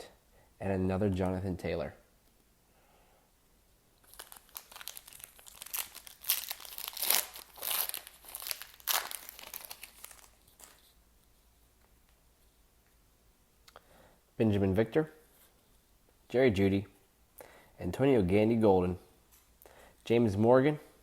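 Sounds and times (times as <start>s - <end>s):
card pack wrapper tearing and crinkling: 4.0s - 10.9s.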